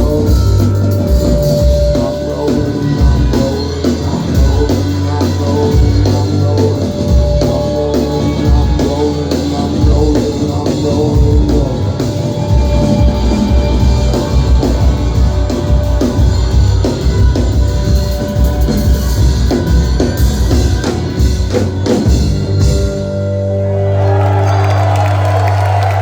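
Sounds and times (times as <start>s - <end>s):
drums: 0.0s - 26.0s
rock band playing: 0.0s - 26.0s
audience cheering and whistling: 23.4s - 26.0s.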